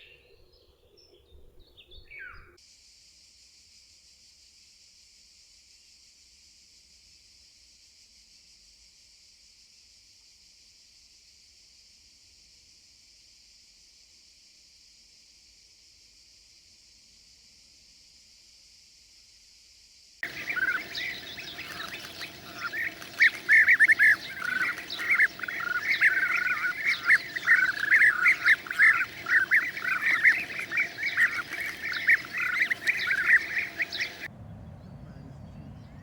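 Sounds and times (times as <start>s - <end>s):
chorus of bird calls: 20.2s - 36.0s.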